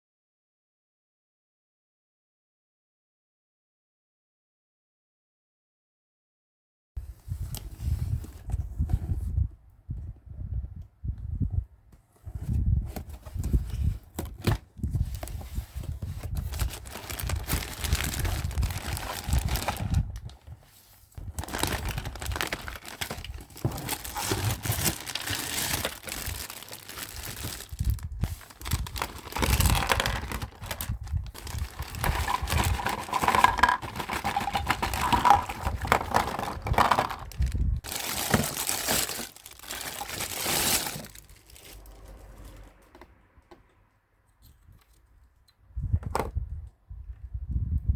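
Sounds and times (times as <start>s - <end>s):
packaging crinkling and tearing: 14.2s - 20.6s, 21.2s - 42.7s.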